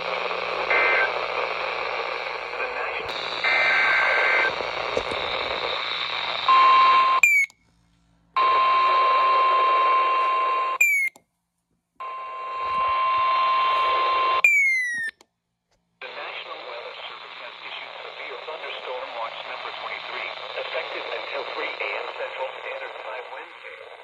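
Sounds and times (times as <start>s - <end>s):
weather radio hiss: 0.0s - 7.2s, 8.4s - 10.6s, 13.6s - 14.4s, 16.0s - 24.0s.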